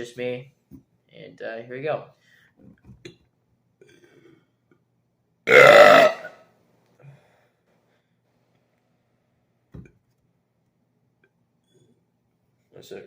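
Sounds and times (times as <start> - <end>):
man burping: 5.5 - 6.4.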